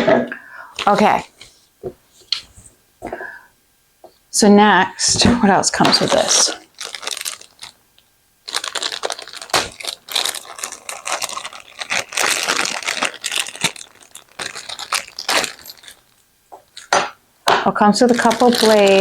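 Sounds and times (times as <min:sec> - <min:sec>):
plastic packaging crinkling: 0:00.8 - 0:01.6, 0:05.0 - 0:07.8, 0:08.4 - 0:17.2, 0:17.8 - 0:19.0.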